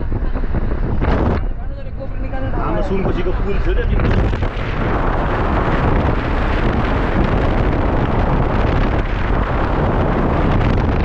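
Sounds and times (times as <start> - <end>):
wind buffeting microphone: 0.0 - 11.0.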